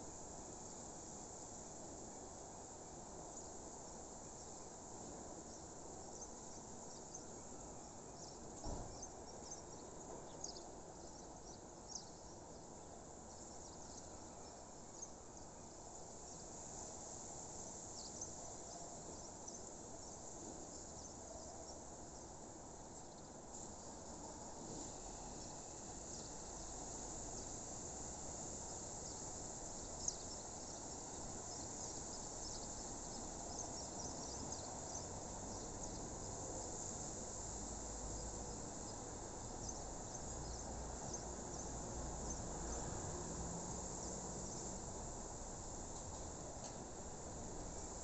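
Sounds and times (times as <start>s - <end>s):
crickets chirping: 0.0s - 48.0s.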